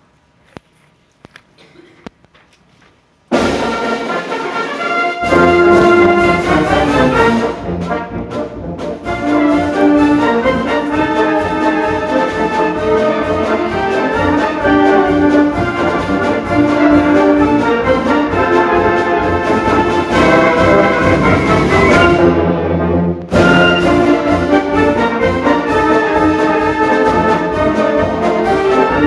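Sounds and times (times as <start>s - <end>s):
steady percussion beat: 3.3s - 22.4s, 23.3s - 29.0s
brass leading: 3.3s - 29.0s
concert band playing: 3.3s - 29.0s.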